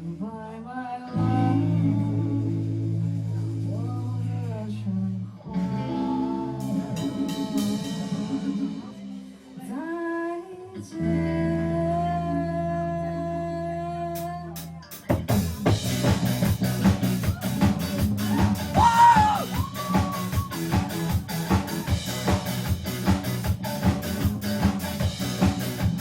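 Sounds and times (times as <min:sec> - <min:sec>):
person singing: 0:00.0 - 0:14.8
rock band playing: 0:05.6 - 0:09.6, 0:14.2 - 0:26.0
drum kit beat: 0:06.6 - 0:09.5, 0:14.6 - 0:26.0.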